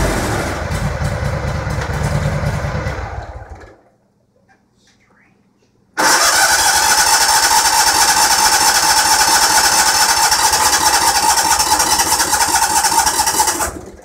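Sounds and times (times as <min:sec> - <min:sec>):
electric starter cranking engine: 0:06.0 - 0:14.0.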